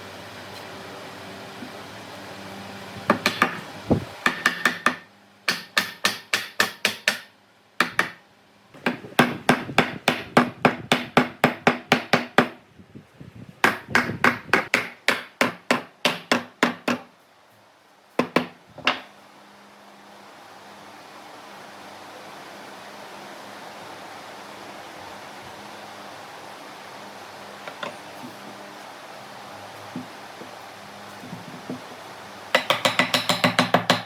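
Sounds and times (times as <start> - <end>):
rapid hammering: 3.1 - 8.2, 8.8 - 12.6, 13.6 - 17.1, 18.2 - 19.1, 32.5 - 34.0.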